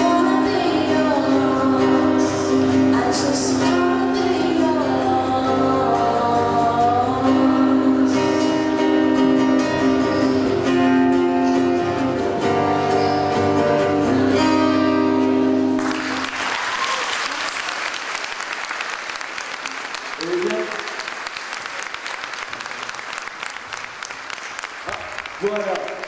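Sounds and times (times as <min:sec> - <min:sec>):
acoustic guitar strumming: 0:00.0 - 0:16.2
audience applause: 0:15.8 - 0:26.0.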